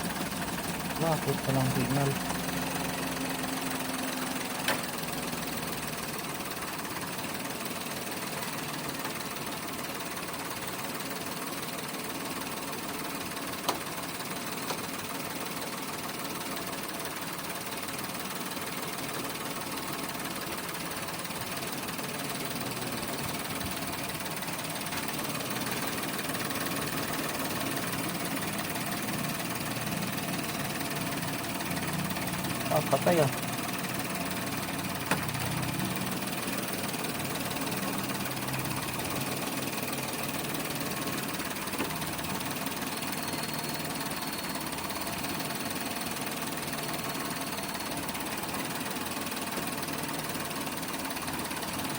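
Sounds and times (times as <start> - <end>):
car engine idling: 0.0 - 51.9.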